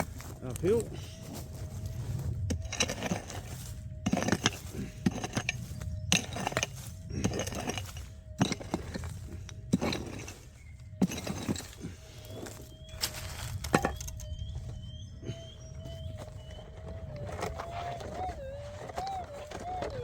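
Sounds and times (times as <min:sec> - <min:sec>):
digging tool striking stony ground: 0:02.5 - 0:14.3
stones clinking: 0:02.5 - 0:14.4.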